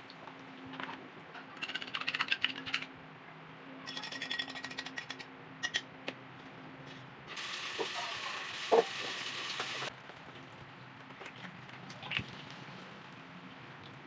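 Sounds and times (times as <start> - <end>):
food sizzling in oil: 7.3 - 9.9.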